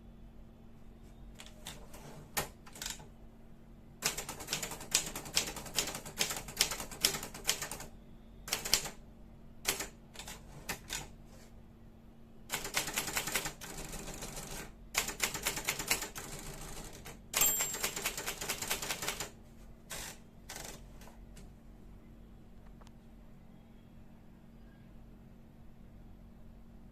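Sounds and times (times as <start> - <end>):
typewriter keystrokes: 1.4 - 3.0, 4.0 - 7.9, 8.5 - 9.0, 9.6 - 11.1, 12.5 - 16.3, 16.9 - 19.3
typewriter bell ring: 17.4 - 18.9.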